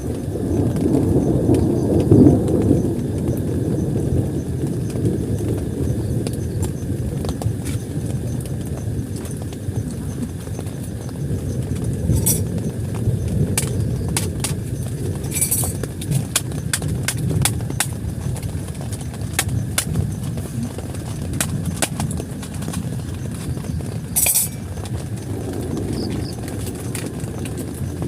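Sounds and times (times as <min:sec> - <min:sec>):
heavy rain on a tent: 0:00.0 - 0:28.0
raindrops clicking on fabric: 0:00.0 - 0:28.0.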